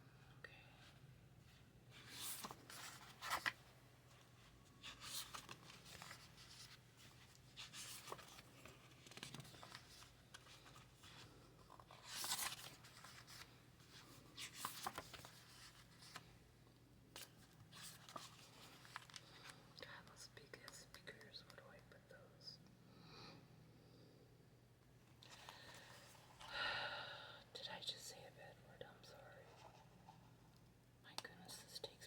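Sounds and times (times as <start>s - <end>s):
faint steady hum: 0.0s - 32.0s
paper rustling and scraping: 1.9s - 4.2s, 4.8s - 16.2s.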